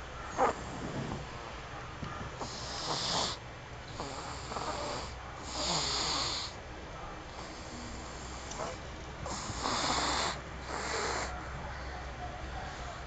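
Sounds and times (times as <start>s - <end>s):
breathy snoring: 0.4s - 1.4s, 2.4s - 6.6s, 7.3s - 11.4s.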